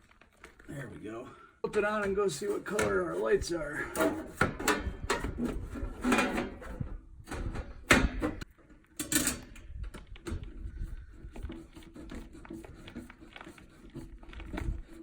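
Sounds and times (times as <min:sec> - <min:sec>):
knocks and clunks of handling: 0:03.9 - 0:10.7.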